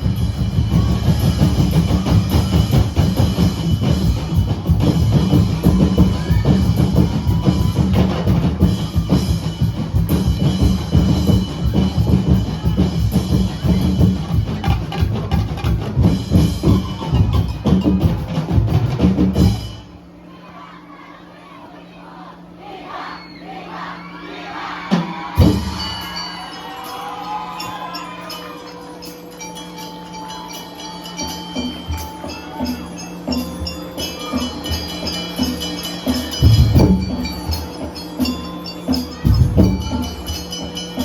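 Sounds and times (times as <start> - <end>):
bass and snare drums playing: 0.0 - 20.3, 24.9 - 26.4, 31.5 - 41.0.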